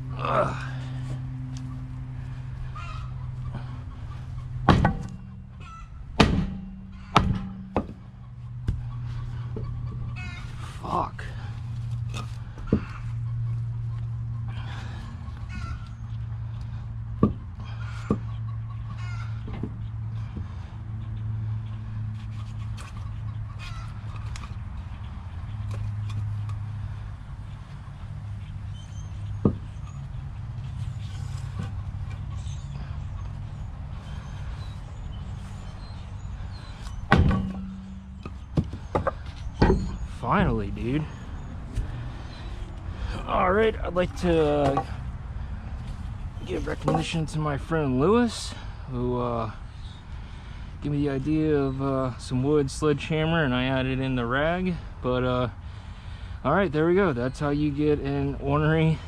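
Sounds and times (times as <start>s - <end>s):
steady low hum: 0.0s - 51.2s
sledgehammer hitting metal wheel: 4.6s - 8.1s, 37.1s - 40.3s
muffled sledgehammer blow: 6.2s - 8.0s, 37.1s - 38.3s.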